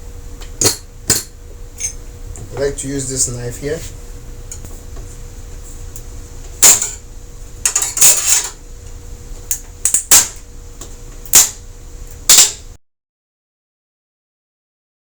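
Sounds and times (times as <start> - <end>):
knife blade scraping metal: 7.7 - 8.6.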